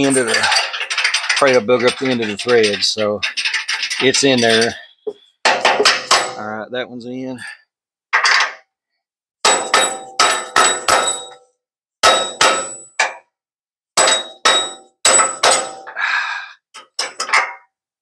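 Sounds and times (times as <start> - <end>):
hammer striking steel: 9.4 - 11.4.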